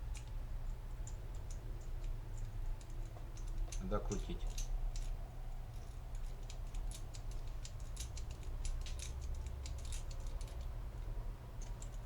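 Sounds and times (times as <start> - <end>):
steady low hum: 0.0 - 12.0
lockpick clicking in lock: 5.8 - 10.8.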